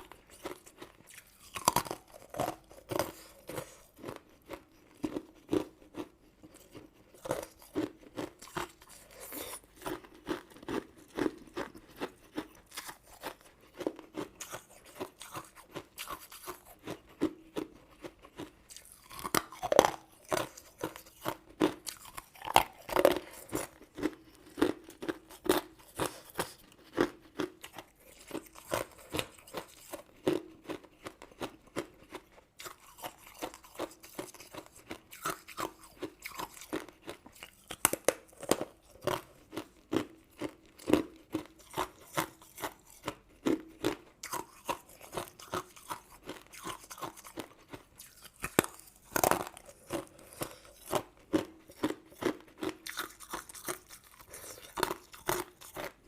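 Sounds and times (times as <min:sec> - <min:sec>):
chewing and crunching sweets: 0:00.0 - 0:56.0.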